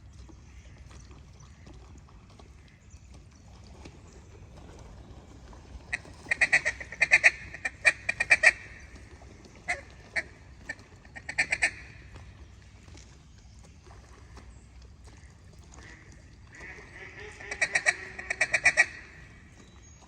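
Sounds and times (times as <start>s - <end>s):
duck quacking: 5.9s - 8.7s, 9.7s - 11.9s, 15.8s - 19.2s.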